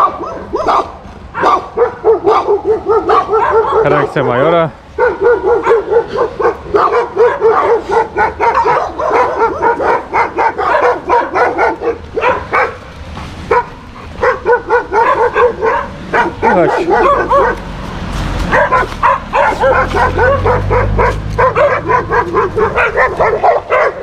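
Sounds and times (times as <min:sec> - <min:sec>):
dogs barking: 0:00.0 - 0:24.0.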